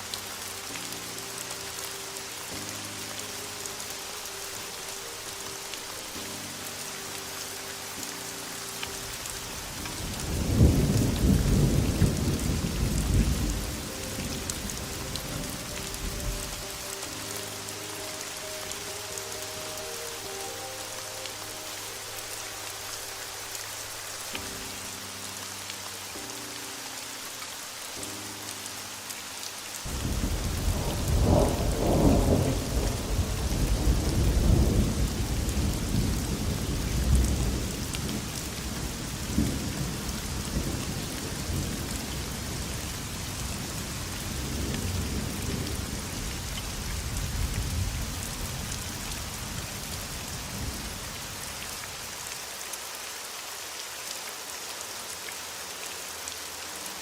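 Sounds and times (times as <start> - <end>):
soft sustained music chords: 0.0 - 50.0
heavy rain hiss: 0.0 - 57.0
rolling thunder rumble: 10.2 - 15.0, 29.9 - 38.4.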